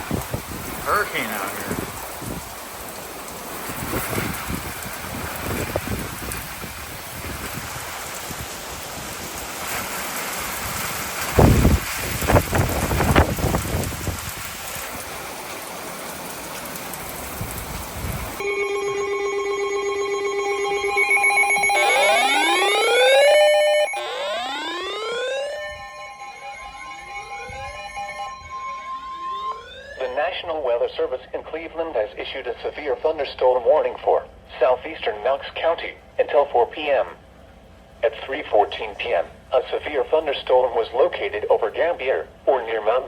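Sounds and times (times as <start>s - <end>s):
heavy rain pouring: 0.0s - 28.9s
siren-like rising sweeps: 18.4s - 30.3s
electronic alarm tones: 18.4s - 30.4s.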